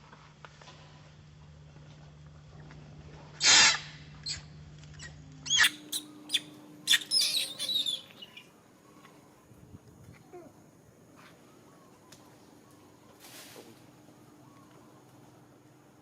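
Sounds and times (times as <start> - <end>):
monkeys squealing and shrieking: 3.4 - 4.4, 5.5 - 8.4.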